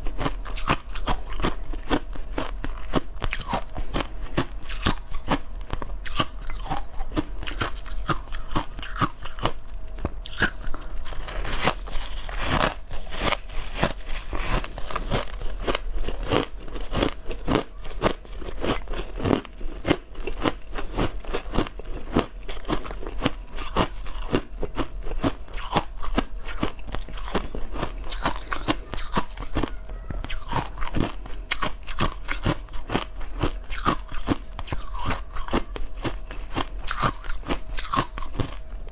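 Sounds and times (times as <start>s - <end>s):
ice being chewed: 0.0s - 38.8s.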